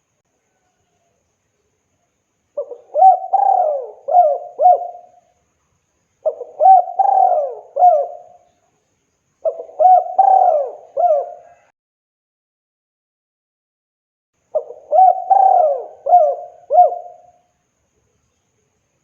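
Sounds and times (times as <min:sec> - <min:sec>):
dove cooing: 0:02.6 - 0:05.2, 0:06.2 - 0:08.5, 0:09.4 - 0:11.7, 0:14.6 - 0:17.4.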